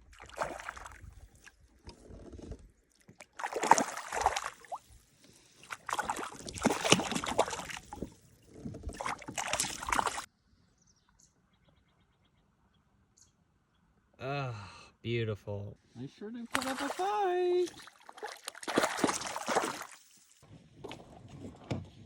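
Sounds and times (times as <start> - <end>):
fish splashing in water: 0.1 - 1.5, 3.0 - 8.2, 8.8 - 10.3, 16.5 - 20.3.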